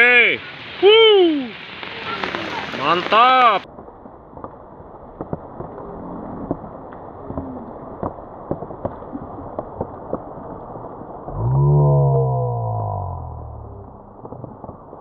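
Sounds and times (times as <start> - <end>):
steady hiss: 0.0 - 5.7.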